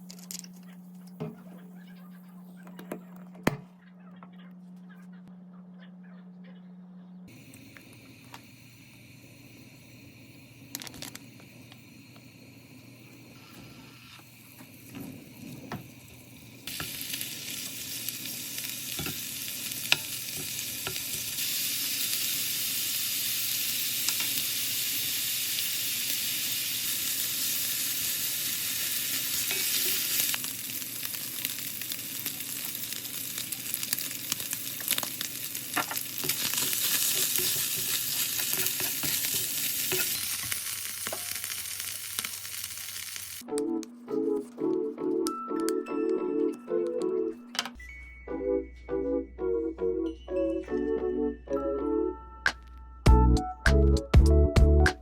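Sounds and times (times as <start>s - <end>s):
food sizzling in a frying pan: 7.3s - 43.4s.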